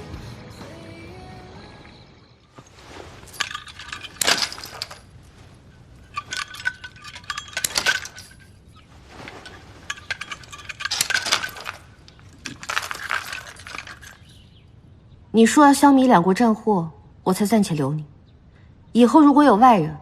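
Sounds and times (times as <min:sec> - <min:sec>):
metal chain clinking: 0:02.7 - 0:14.6.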